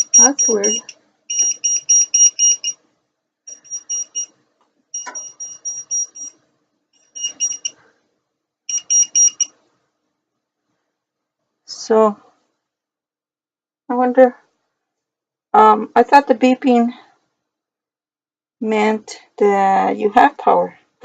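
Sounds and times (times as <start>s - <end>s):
voltage tester rapid high beeps: 0.0s - 2.8s, 3.5s - 4.3s, 5.0s - 6.4s, 7.1s - 7.8s, 8.7s - 9.5s.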